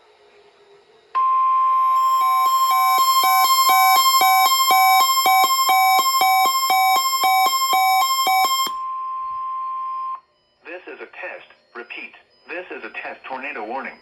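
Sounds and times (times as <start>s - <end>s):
steady high alarm tone: 1.2s - 9.1s
alarm beeping: 1.2s - 10.2s.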